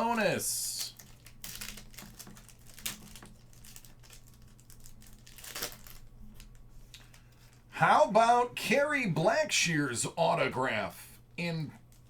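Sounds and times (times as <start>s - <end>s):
card pack wrapper crinkling: 0.0s - 7.6s.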